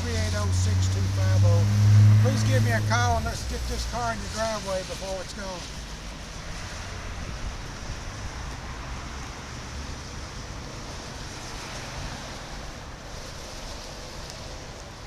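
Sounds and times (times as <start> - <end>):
low rumble: 0.0 - 9.4
wind noise on microphone: 0.0 - 15.0.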